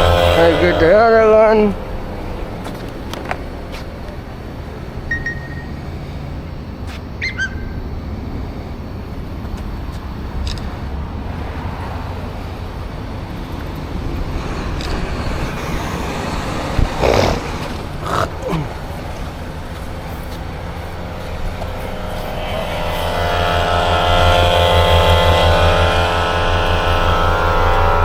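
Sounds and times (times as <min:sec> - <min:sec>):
traffic passing: 0:00.0 - 0:28.0
short high chirps: 0:05.1 - 0:05.8.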